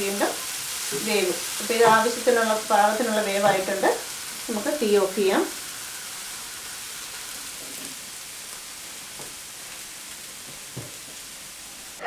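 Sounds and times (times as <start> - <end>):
food sizzling in a pan: 0.0 - 12.0
faint knocks: 10.4 - 11.2.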